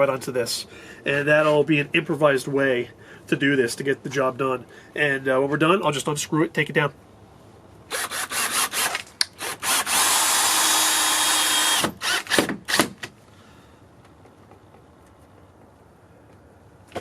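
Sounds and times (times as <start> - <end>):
electric drill whining: 7.9 - 12.5.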